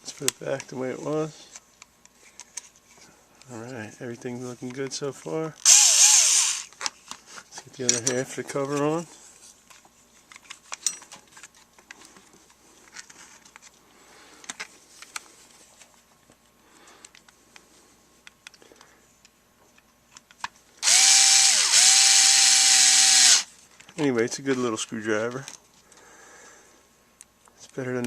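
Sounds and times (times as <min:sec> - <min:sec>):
cordless screwdriver motor whirring: 0:05.6 - 0:06.7, 0:20.8 - 0:23.5.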